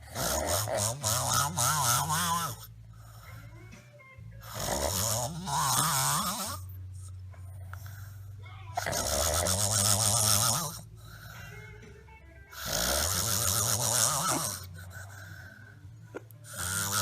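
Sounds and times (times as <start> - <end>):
person snoring loudly: 0.0 - 2.7, 4.4 - 7.1, 8.8 - 11.5, 12.5 - 15.7, 16.4 - 17.0.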